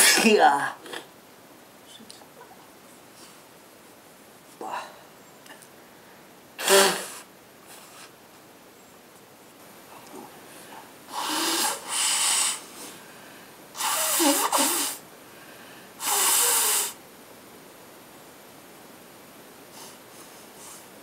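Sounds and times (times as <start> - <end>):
person blowing nose: 6.6 - 8.1, 11.1 - 12.9, 13.8 - 15.0, 16.0 - 17.0.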